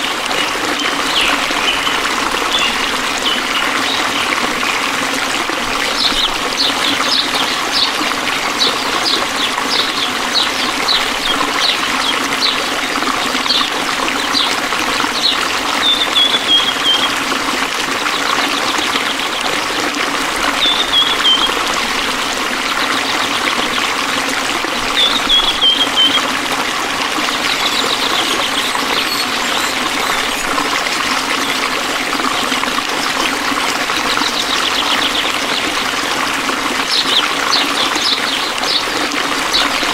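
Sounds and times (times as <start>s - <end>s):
stream water trickling: 0.0s - 39.9s
descending trills: 27.2s - 31.5s.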